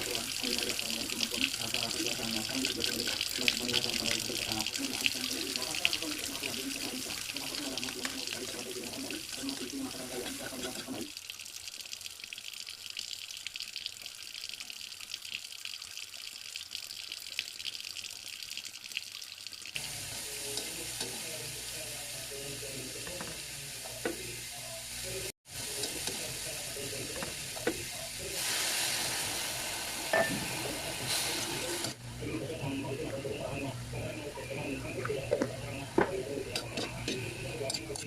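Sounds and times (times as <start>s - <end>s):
running water splashing: 0.0s - 22.0s.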